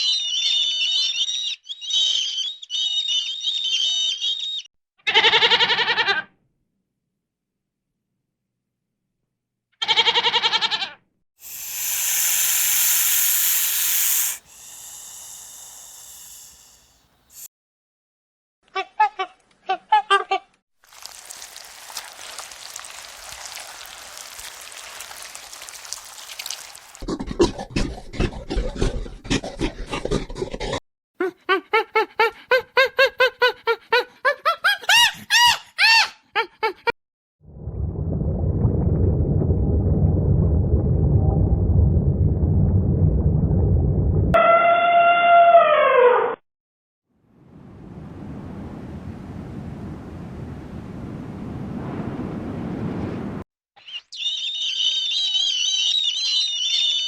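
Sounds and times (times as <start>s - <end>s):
goat bleating: 5.0s - 6.3s, 9.8s - 11.0s
loud hiss: 11.4s - 17.5s.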